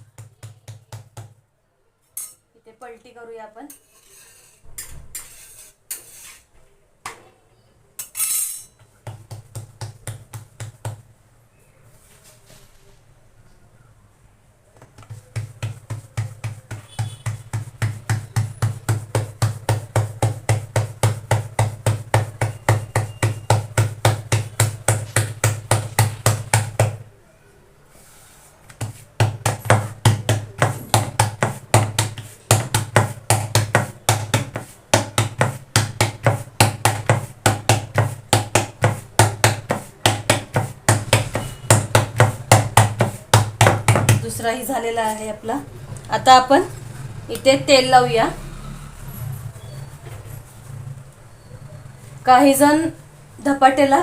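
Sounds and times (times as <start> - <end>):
hands patting dough: 0.0 - 1.4, 9.0 - 11.1, 14.8 - 27.2, 28.4 - 45.4.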